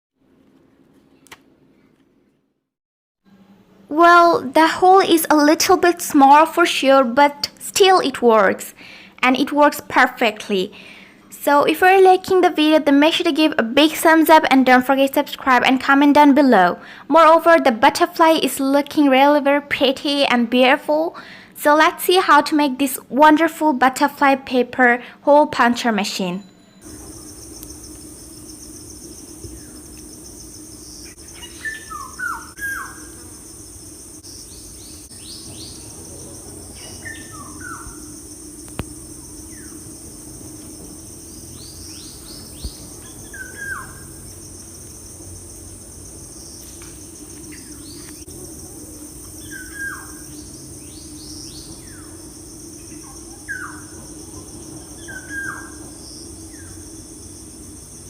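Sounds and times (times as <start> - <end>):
low steady hum: 24.6 - 58.0
birds chirping: 26.8 - 45.1, 46.2 - 56.9
high insect drone: 26.8 - 58.0.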